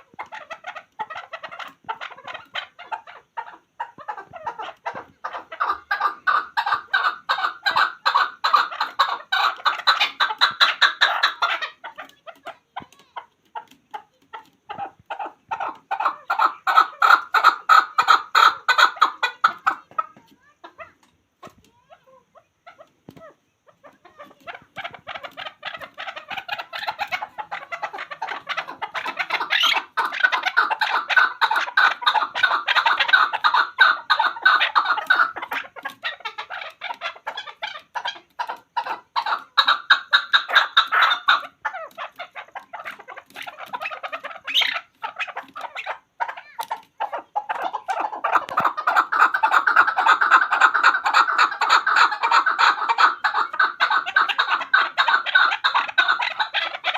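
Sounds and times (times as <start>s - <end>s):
partridge clucking calls: 0.0s - 56.9s.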